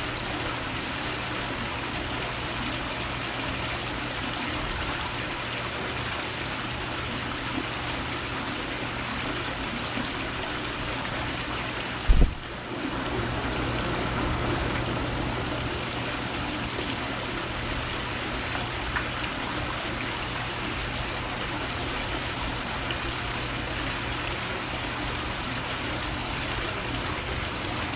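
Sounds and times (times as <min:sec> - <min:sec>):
constant low hum: 0:00.0 - 0:27.9
steady rushing noise: 0:12.1 - 0:12.4.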